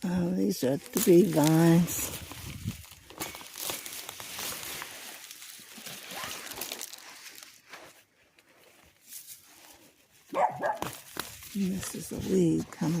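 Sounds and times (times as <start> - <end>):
vines and leaves rustling: 0.0 - 13.0.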